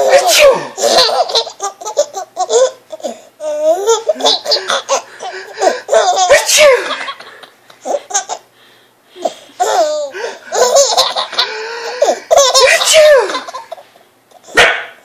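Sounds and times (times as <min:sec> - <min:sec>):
man sneezing: 0:00.0 - 0:00.9, 0:06.3 - 0:07.1, 0:12.6 - 0:13.4
toddler laughing: 0:00.0 - 0:08.5, 0:09.2 - 0:14.6.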